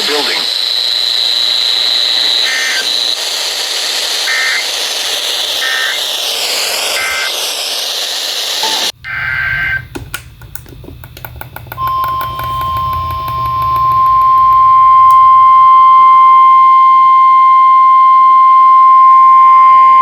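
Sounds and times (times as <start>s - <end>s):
two-tone digital data bursts: 0.0s - 9.8s
steady radio alert tone: 0.0s - 9.9s
loud static hiss: 0.0s - 10.6s.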